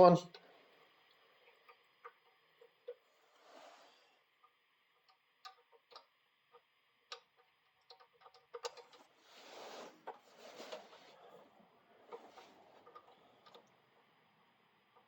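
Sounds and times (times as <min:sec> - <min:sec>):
light clicks and taps: 0:04.4 - 0:09.1, 0:12.0 - 0:14.1.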